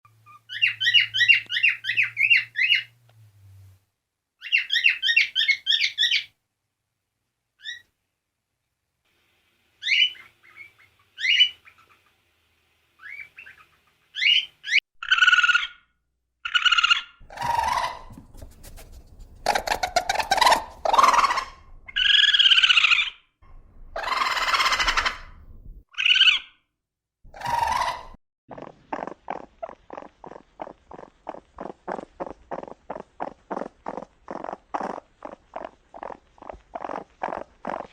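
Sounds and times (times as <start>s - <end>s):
parrot chirping: 0.2s - 2.9s, 4.4s - 6.4s, 7.6s - 7.9s, 9.8s - 12.1s, 13.0s - 23.2s, 23.9s - 26.6s, 27.3s - 37.9s
parrot squawking: 0.2s - 2.9s, 4.4s - 6.3s, 9.8s - 12.0s, 13.0s - 15.8s, 16.4s - 23.2s, 24.0s - 26.6s, 27.3s - 37.9s.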